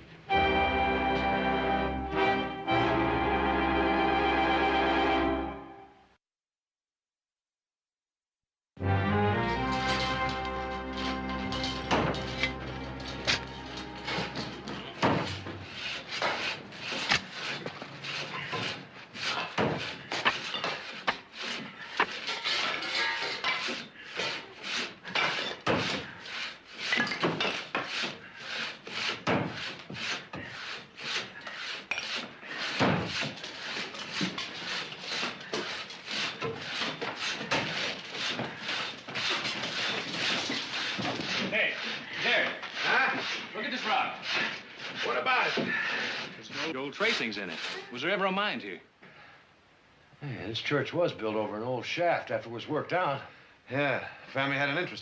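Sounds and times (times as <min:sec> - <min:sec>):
wood and rubble knocking and scraping: 0:09.8 - 0:24.4, 0:31.9 - 0:43.1.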